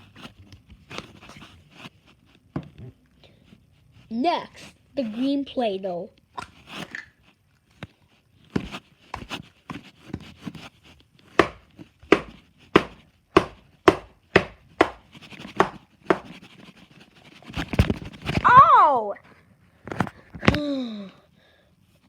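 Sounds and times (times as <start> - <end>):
plastic tool chopping on plastic tray: 11.3 - 16.5.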